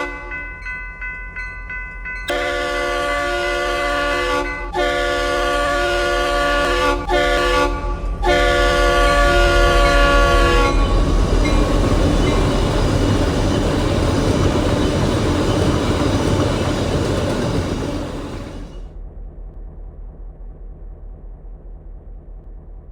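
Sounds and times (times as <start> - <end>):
locomotive horn: 0.0 - 0.4, 2.3 - 18.8
train rumbling and rattling past: 0.0 - 20.1.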